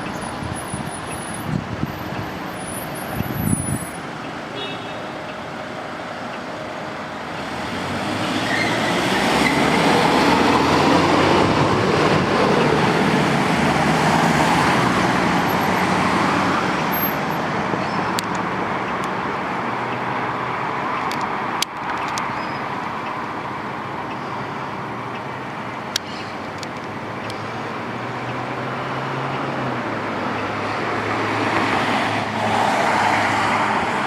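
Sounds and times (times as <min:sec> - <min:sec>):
vehicle passing close by: 0:07.4 - 0:16.9, 0:28.0 - 0:34.0.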